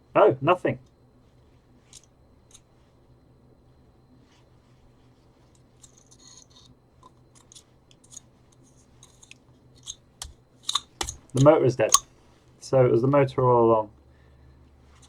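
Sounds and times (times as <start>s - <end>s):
low steady hum: 0.0s - 15.0s
small parts clicking and scratching: 1.8s - 2.7s, 5.4s - 12.1s.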